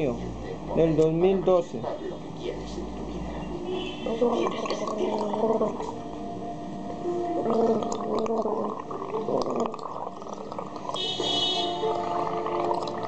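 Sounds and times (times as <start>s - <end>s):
boy gargling liquid: 4.1s - 6.0s, 7.4s - 11.0s, 12.0s - 13.0s.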